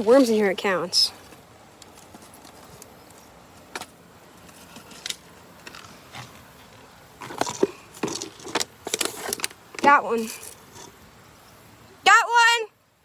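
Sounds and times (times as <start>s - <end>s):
faint steady hiss: 0.0s - 13.0s.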